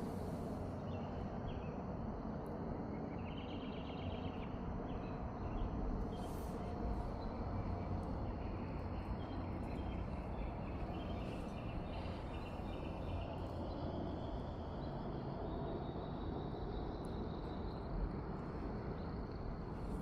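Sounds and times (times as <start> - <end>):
steady low rumble: 4.2 - 20.0.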